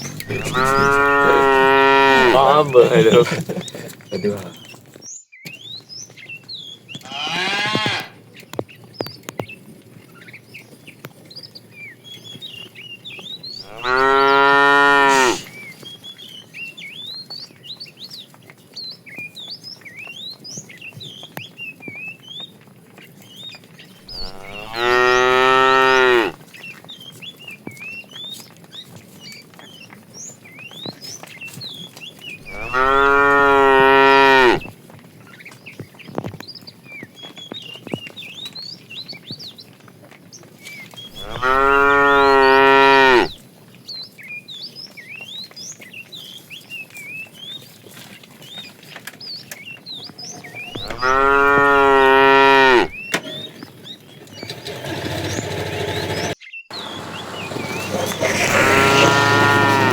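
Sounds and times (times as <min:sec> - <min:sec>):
small birds twittering: 0:00.0 - 0:59.9
cows mooing: 0:00.2 - 0:03.4, 0:07.0 - 0:08.2, 0:13.6 - 0:15.5, 0:24.1 - 0:26.4, 0:32.4 - 0:34.7, 0:41.1 - 0:43.4, 0:50.5 - 0:53.0, 0:55.6 - 0:59.9.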